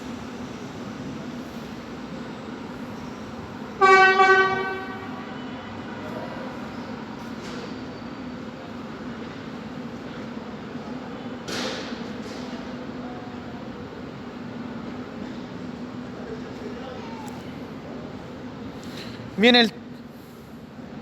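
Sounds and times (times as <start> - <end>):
train horn blast: 3.7 - 6.4.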